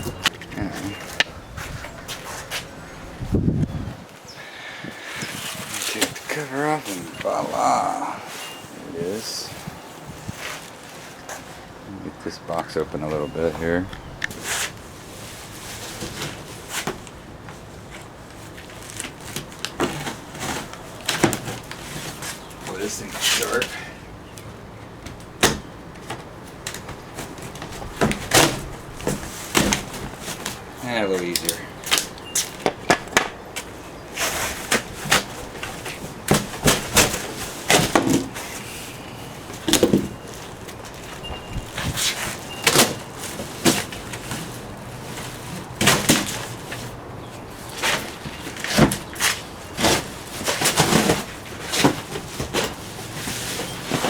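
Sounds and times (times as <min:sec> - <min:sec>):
cardboard scraping and rustling: 0:05.1 - 0:11.7, 0:13.5 - 0:23.8, 0:25.4 - 0:54.0
cardboard box rustling and scraping: 0:33.6 - 0:54.0
cardboard box knocks and thumps: 0:34.7 - 0:38.6, 0:45.8 - 0:46.6.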